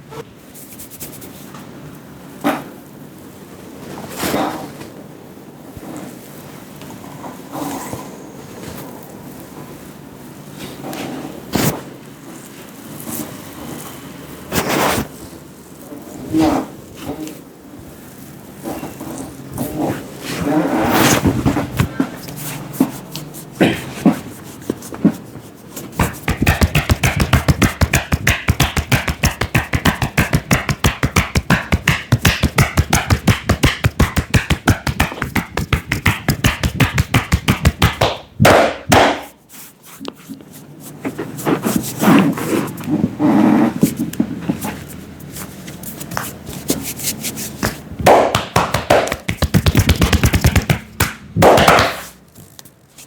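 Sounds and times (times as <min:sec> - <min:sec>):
hands tapping and slapping on head: 0:26.0 - 0:39.3, 0:47.6 - 0:52.1.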